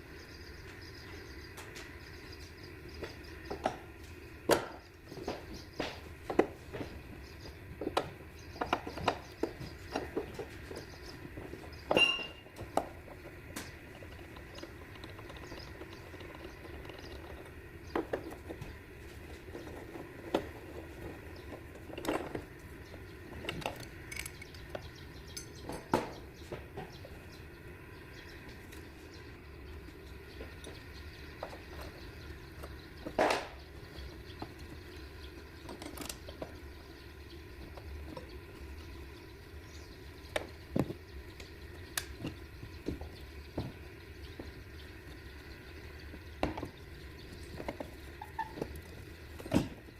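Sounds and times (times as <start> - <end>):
ringing metallic clank: 12.0 - 12.4.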